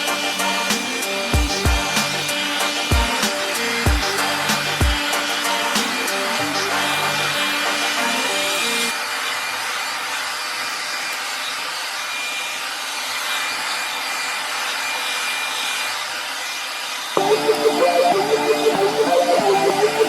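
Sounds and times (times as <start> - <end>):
background music: 0.0 - 8.9, 17.2 - 20.0
hair dryer blowing: 0.0 - 20.0.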